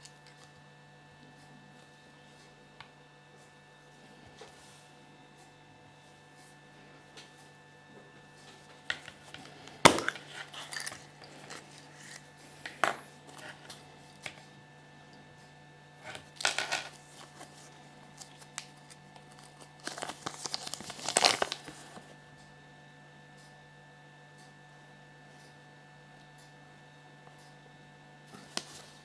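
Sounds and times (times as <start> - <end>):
wrapping crinkling and tearing: 8.9 - 13.8, 16.1 - 22.2, 28.4 - 29.0.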